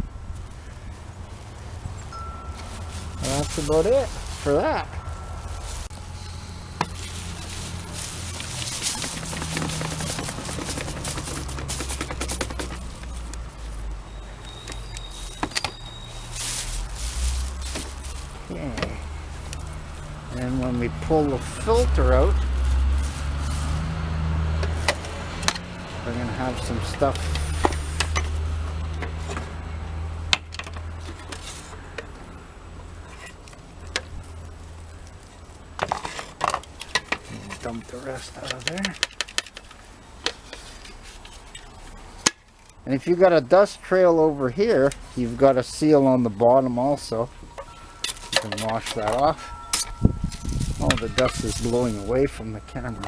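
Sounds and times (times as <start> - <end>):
low rumble: 0.0 - 11.7
wind rumbling on microphone: 0.0 - 31.0, 49.2 - 53.0
plastic vacuum parts rattling: 2.5 - 23.7, 24.5 - 29.6, 35.8 - 41.6, 47.6 - 53.0
plastic parts clicking and knocking: 6.8 - 13.5, 35.8 - 41.0.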